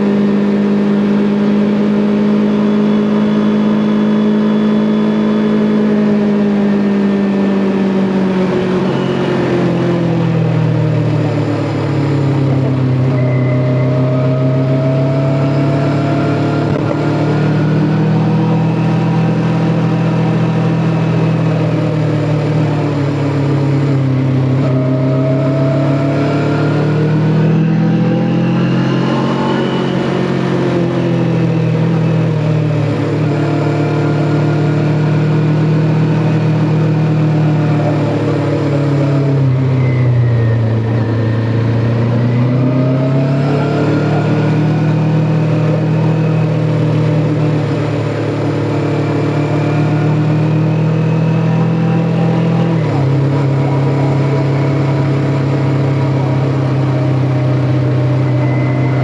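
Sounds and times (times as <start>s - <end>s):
motorcycle engine running: 0.0s - 42.5s
wind and road rush: 0.0s - 59.0s.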